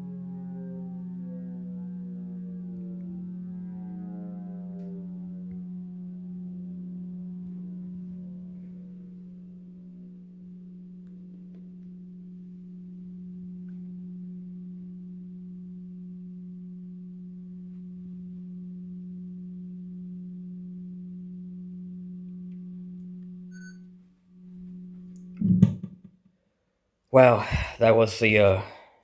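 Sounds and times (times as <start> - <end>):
faint falling siren tones: 0.0 - 18.5
synthesized siren low tone: 0.0 - 26.0.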